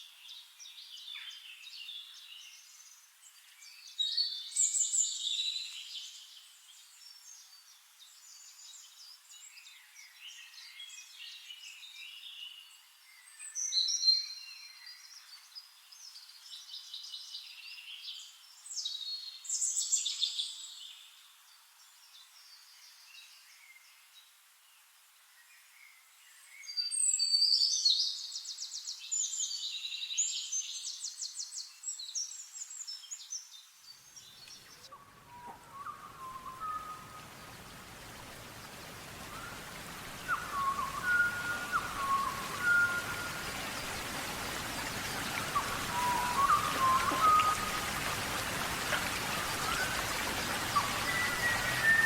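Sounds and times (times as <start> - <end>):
birds chirping and singing: 34.6 - 52.0.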